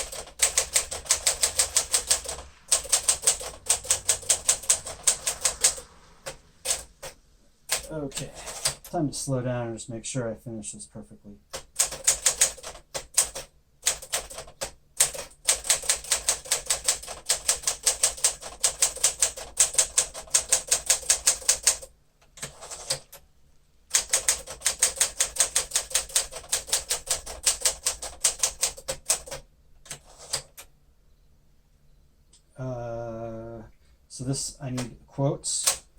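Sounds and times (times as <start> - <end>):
manual typewriter keys striking: 0.0 - 5.8, 6.7 - 8.9, 11.5 - 23.2, 23.9 - 30.7.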